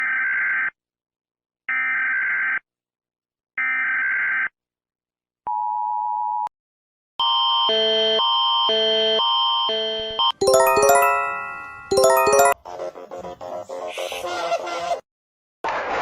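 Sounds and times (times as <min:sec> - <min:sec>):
chiming multi-note tone: 0:10.4 - 0:12.6
two-note attention tone: 0:10.4 - 0:12.6.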